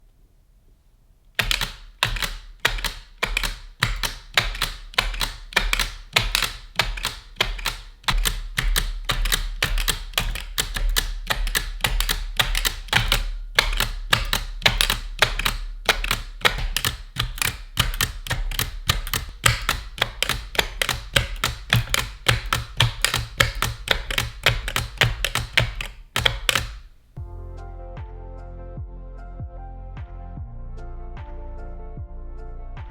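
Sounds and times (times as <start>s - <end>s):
typewriter clacking: 1.4s - 27.0s.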